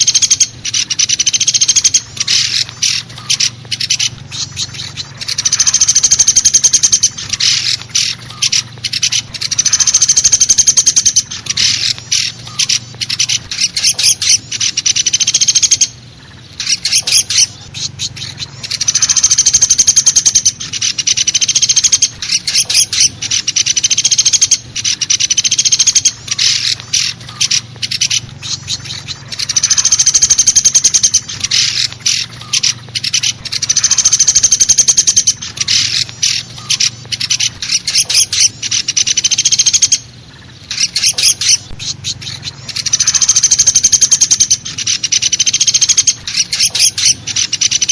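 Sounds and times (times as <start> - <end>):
woodpecker rattling trills: 0.0 - 47.9.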